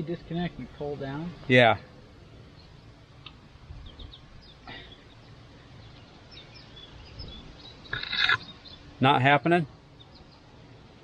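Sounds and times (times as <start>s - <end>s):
faint bird chirps: 3.7s - 10.6s.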